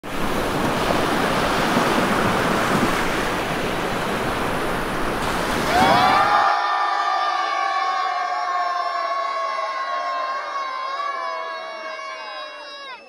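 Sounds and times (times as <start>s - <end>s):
rushing and splashing water: 0.0s - 6.6s.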